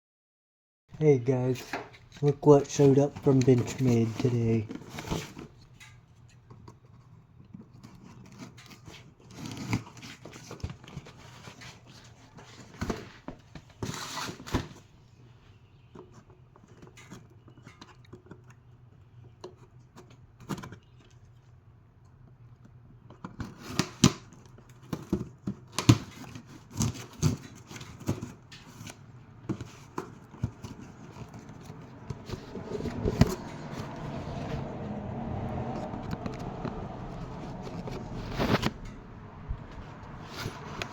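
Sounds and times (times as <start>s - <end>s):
steady low noise: 32.4s - 40.6s
packaging rustling and tearing: 37.0s - 39.0s.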